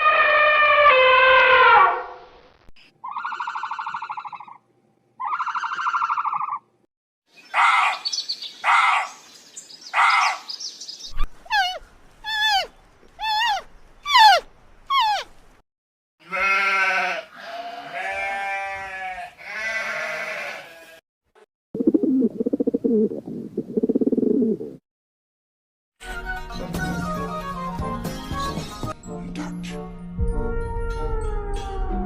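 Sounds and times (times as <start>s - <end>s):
buzzy pulsed animal calls: 3.0s - 4.6s, 11.5s - 15.3s
short harsh animal calls: 11.2s - 15.3s.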